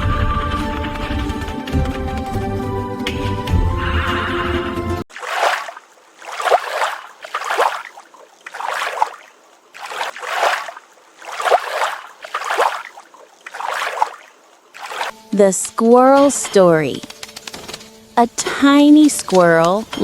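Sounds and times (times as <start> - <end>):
music: 0.0 - 5.0, 15.2 - 20.0
water swishes: 5.0 - 20.0.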